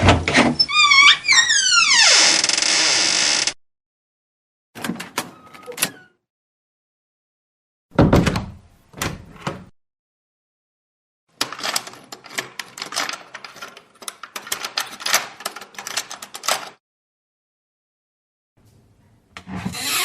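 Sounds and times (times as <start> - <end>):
door opening with heavy thud: 7.9 - 9.7.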